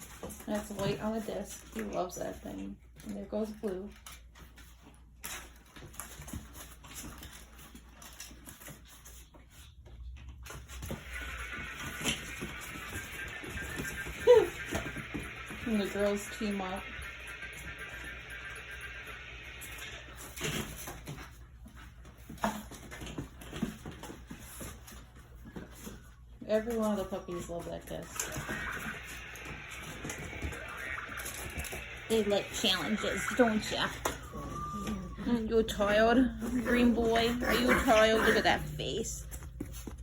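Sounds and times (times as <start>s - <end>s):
puppies scuffling: 0.0s - 40.0s
puppies whimpering and yelping: 11.6s - 15.5s, 28.2s - 38.6s
soft patter: 20.3s - 40.0s.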